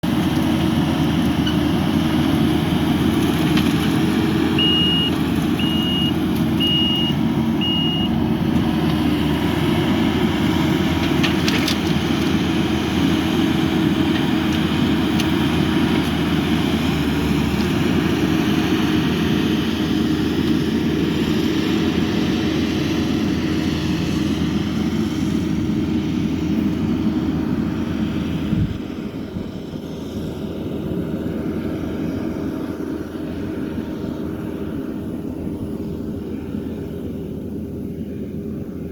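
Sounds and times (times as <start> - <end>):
engine running loudly: 0.0 - 38.9
short high beeps: 4.6 - 8.1.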